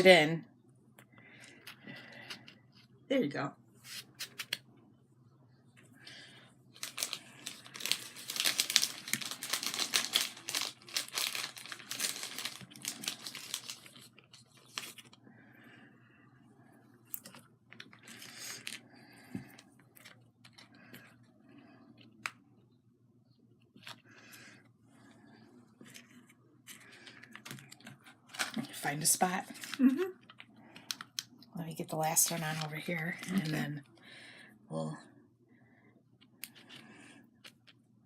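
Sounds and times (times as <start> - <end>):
materials crinkling and rustling: 6.7 - 15.2, 25.8 - 31.1, 32.0 - 33.6.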